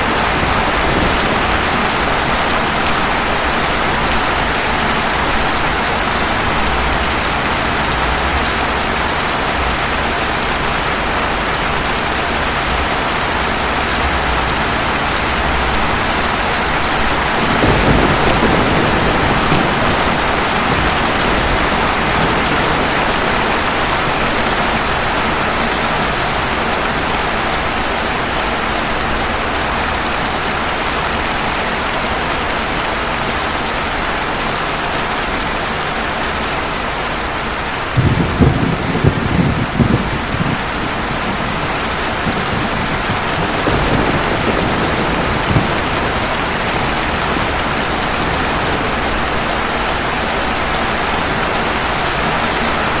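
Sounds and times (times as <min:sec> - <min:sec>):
low rumble of thunder: 0:00.0 - 0:12.1, 0:12.7 - 0:25.1, 0:38.0 - 0:49.7
steady rain falling: 0:00.0 - 0:53.0.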